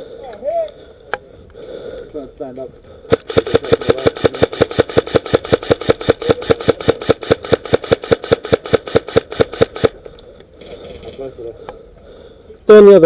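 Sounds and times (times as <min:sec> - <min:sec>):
airsoft rifle firing bursts: 0:03.1 - 0:10.0.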